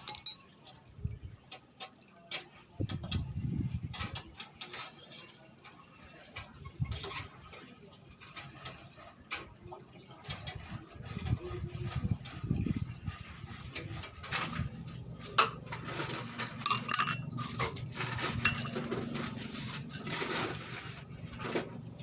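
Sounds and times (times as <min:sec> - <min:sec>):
small metal parts clicking: 0:00.0 - 0:00.8, 0:15.4 - 0:19.2.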